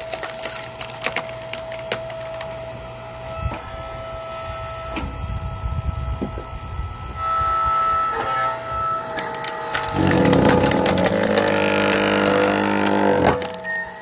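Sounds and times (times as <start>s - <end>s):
log cracking and splintering: 0.0s - 2.6s, 9.2s - 14.0s
log splitter hum: 0.0s - 14.0s
low rumble: 9.8s - 13.5s.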